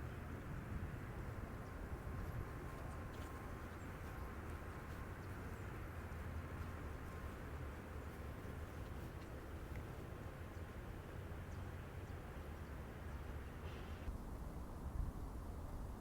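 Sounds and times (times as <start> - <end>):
low rumble and hiss: 0.0 - 16.0
faint high ticks: 1.6 - 10.0.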